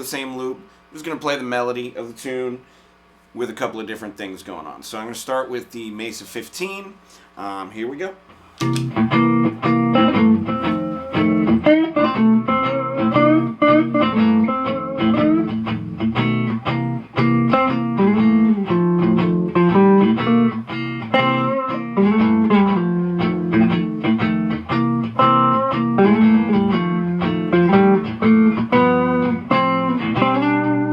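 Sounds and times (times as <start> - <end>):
electric guitar melody: 8.6 - 30.9.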